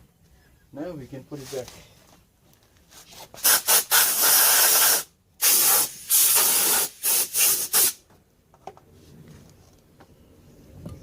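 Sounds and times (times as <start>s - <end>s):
aerosol spray can hissing: 3.4s - 8.0s.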